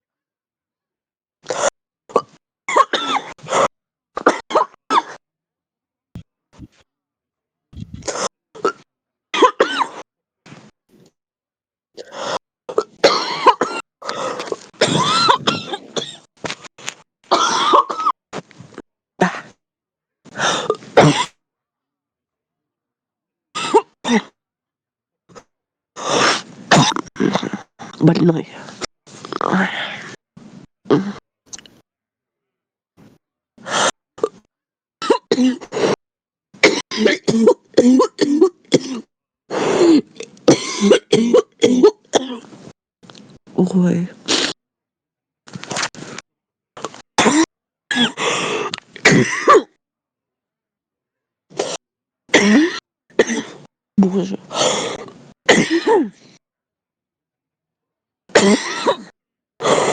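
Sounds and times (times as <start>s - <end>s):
person coughing hoarsely: 2.1s - 5.2s, 12.7s - 16.3s, 17.3s - 18.2s, 20.6s - 21.4s, 36.6s - 39.1s, 40.5s - 42.4s, 47.2s - 48.3s, 49.0s - 49.7s, 52.3s - 53.6s, 54.2s - 56.2s, 58.3s - 59.2s.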